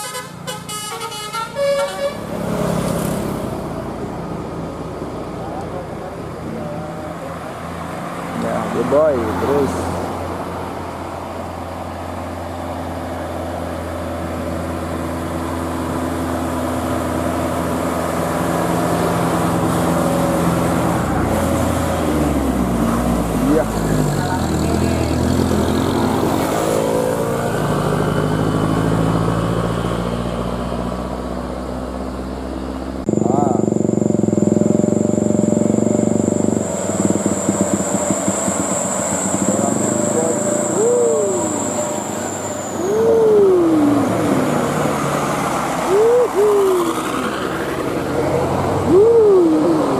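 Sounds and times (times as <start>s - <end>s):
multi-tone air horn: 0.0s - 2.3s
bus engine running: 0.0s - 49.9s.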